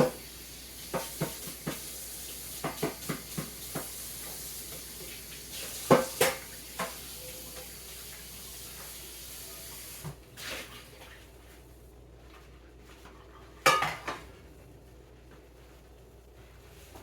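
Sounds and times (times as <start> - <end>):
tap running into sink: 0.0 - 7.8
pan clanking against sink: 2.6 - 4.0, 5.8 - 7.7, 13.6 - 14.3.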